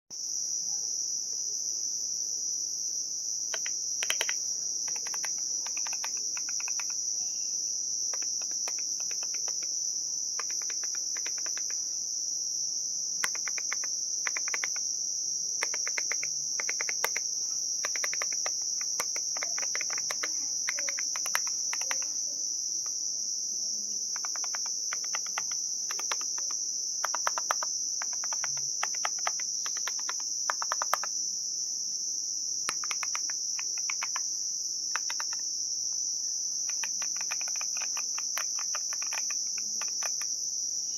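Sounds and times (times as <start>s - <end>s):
cricket chorus: 0.2s - 40.9s
mechanical keyboard keystroke clicks: 3.5s - 7.0s, 8.1s - 9.7s, 10.4s - 11.8s, 13.2s - 14.8s, 15.6s - 17.2s, 17.8s - 22.1s, 24.2s - 31.1s, 32.7s - 34.2s, 35.0s - 35.4s, 36.7s - 40.3s.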